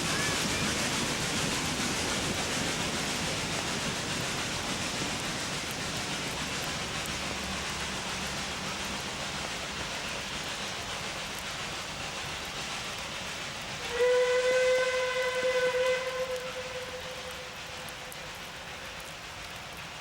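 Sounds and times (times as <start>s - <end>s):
rain hiss: 0.0s - 20.0s
steam locomotive whistle: 13.8s - 18.3s.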